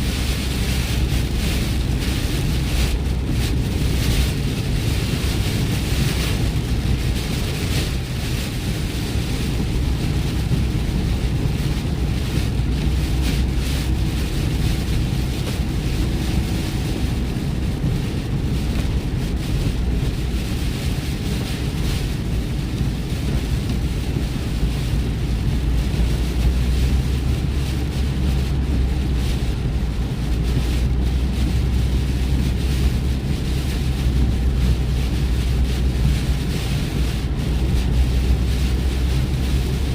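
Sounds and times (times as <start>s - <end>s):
hiss of water spray and rain: 0.0s - 39.9s.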